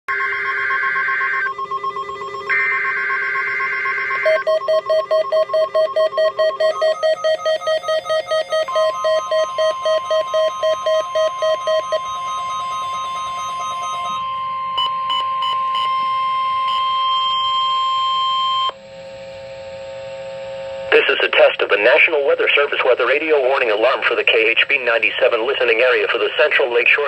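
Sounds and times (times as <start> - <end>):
rapid electronic beeping: 0.1 - 18.7, 21.0 - 27.0
warning alarm tone: 0.1 - 18.8.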